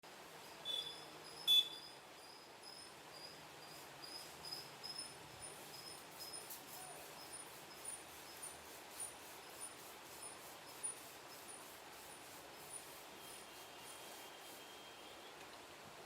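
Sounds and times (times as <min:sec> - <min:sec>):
rain hiss: 0:00.1 - 0:16.0
cricket chirping: 0:00.7 - 0:06.4.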